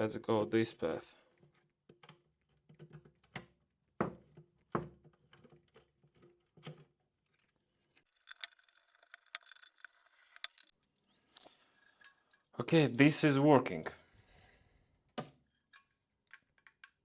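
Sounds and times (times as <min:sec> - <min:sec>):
small parts knocking and clicking: 0:08.0 - 0:10.7, 0:15.7 - 0:17.0.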